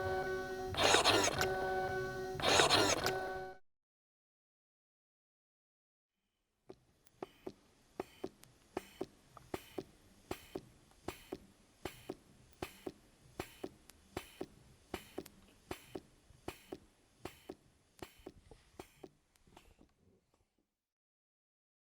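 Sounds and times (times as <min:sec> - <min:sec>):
breast pump clicking: 0:00.7 - 0:01.6, 0:02.4 - 0:03.2, 0:06.7 - 0:20.0
faint background hiss: 0:06.8 - 0:20.4.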